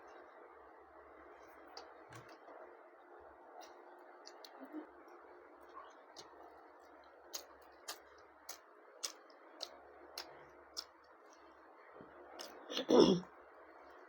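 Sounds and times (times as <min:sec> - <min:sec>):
mouth chewing food: 0:05.7 - 0:11.5, 0:12.3 - 0:12.9.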